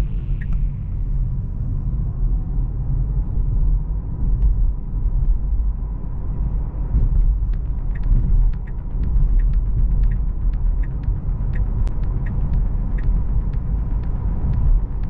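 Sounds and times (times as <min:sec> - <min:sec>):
tyre and road noise: 0:00.0 - 0:15.0
faint light ticks: 0:07.2 - 0:15.0.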